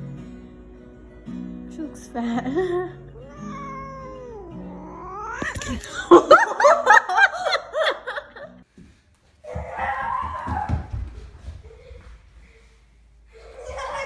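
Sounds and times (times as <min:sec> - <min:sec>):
cat yowling: 0:03.1 - 0:05.8.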